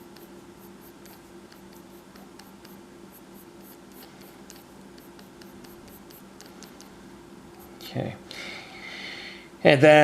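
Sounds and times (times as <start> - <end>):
pencil sketching on paper: 0.0 - 6.9
low electrical hum: 0.0 - 10.0.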